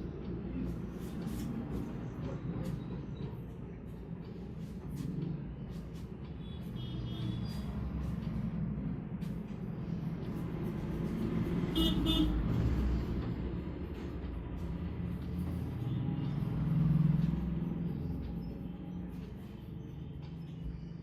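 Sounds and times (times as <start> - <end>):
traffic rumble: 0.0 - 21.0
vehicle horn: 6.4 - 7.6, 11.7 - 12.5.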